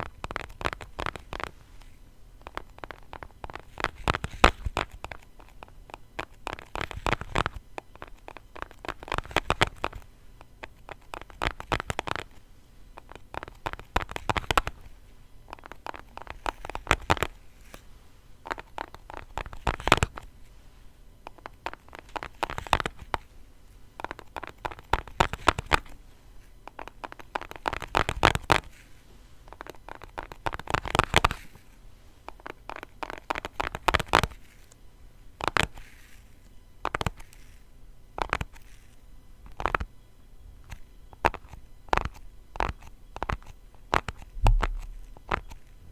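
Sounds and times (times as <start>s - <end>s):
light tapping on small box: 36.8s - 37.6s, 40.6s - 45.7s.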